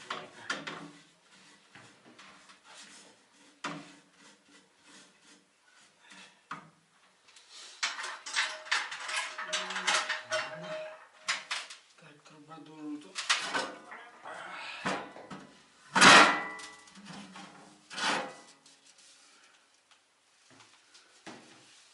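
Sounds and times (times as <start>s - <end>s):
hard objects clinking: 7.8s - 11.7s.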